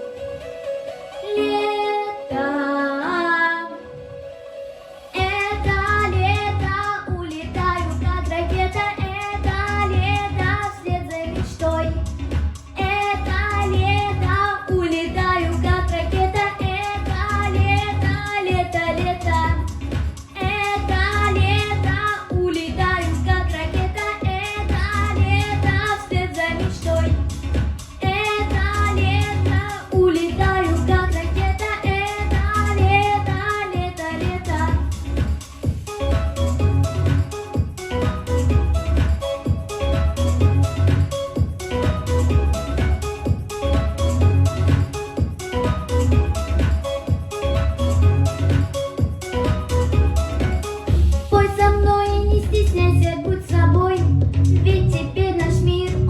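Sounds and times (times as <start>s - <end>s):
woman singing a pop song: 1.2s - 4.0s, 5.1s - 35.2s, 51.2s - 56.0s
backing track with bass beat: 5.2s - 56.0s.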